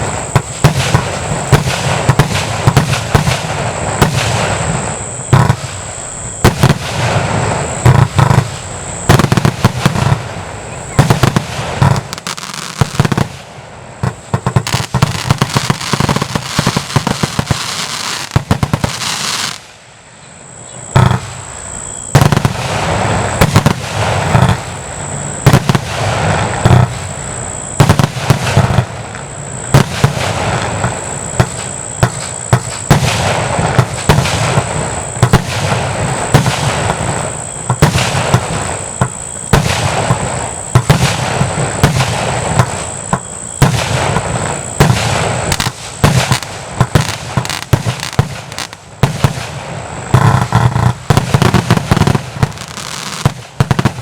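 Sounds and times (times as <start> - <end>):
firework bangs: 0.0 - 19.9, 20.9 - 54.0
firework crackling hiss: 0.0 - 20.1, 20.9 - 54.0.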